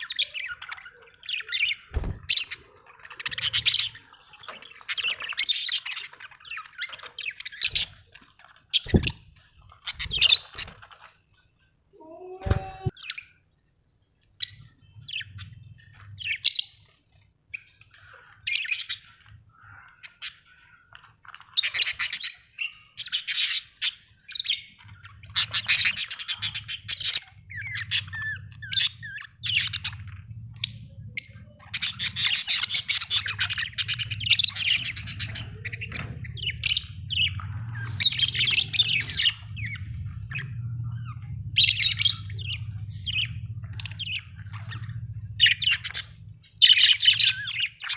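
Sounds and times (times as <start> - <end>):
budgerigars chirping and chattering: 0.0 - 11.5, 14.2 - 47.9
low steady hum: 24.6 - 47.9.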